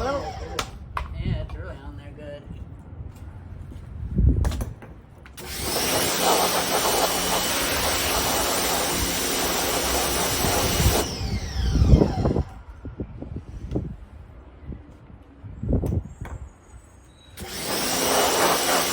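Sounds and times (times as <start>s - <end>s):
pressure washer spraying: 5.4s - 11.1s, 17.4s - 18.9s.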